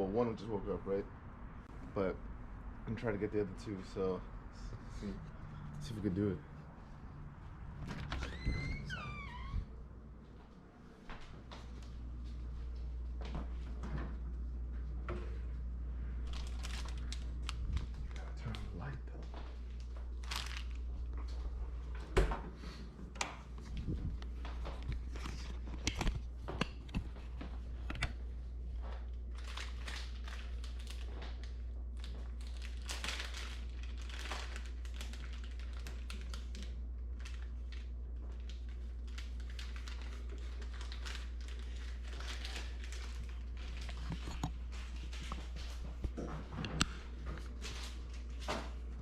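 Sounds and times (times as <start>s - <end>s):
steady low hum: 0.0s - 49.0s
rustling and crinkling handling: 10.1s - 49.0s.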